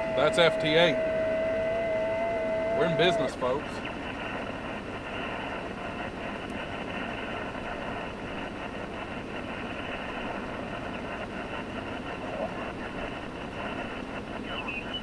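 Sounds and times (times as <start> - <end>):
radio band noise hiss: 2.8 - 15.0
faint radio data tones: 6.8 - 15.0.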